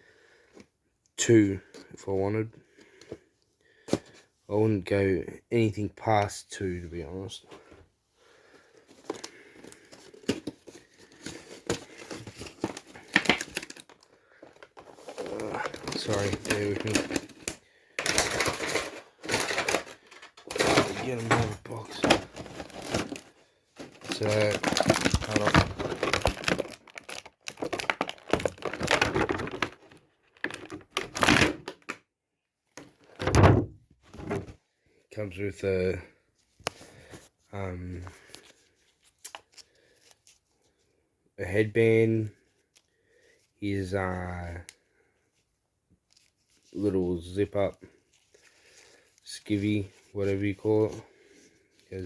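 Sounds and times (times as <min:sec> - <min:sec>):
box crinkling and rustling: 0:08.8 - 0:32.0.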